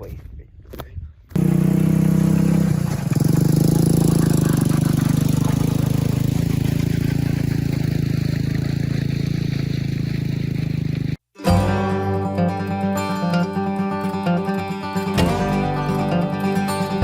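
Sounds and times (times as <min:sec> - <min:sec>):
atv engine running: 0:01.4 - 0:11.2.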